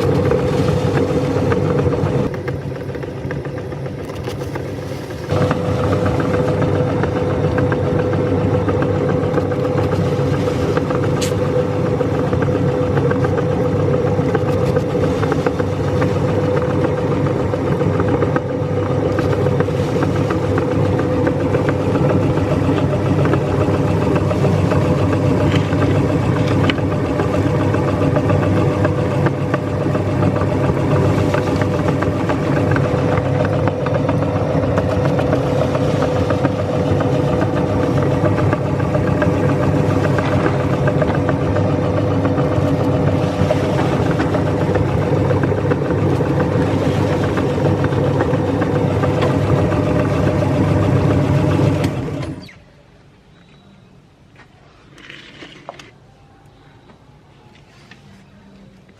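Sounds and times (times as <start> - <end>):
electric meat grinder running: 5.3 - 9.8.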